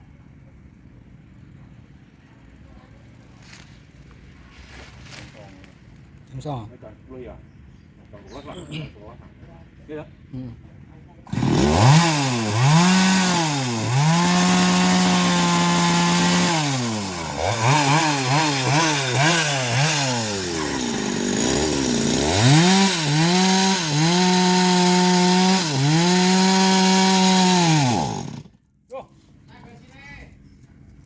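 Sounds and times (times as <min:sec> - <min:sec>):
blade rasping through wood: 0:11.3 - 0:28.5
petrol saw engine revving: 0:11.3 - 0:28.5.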